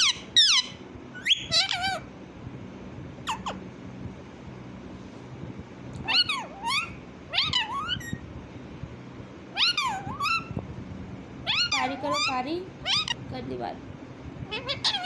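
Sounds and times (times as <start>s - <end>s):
parrot mimicking cat meow: 11.5s - 13.2s, 14.5s - 15.0s.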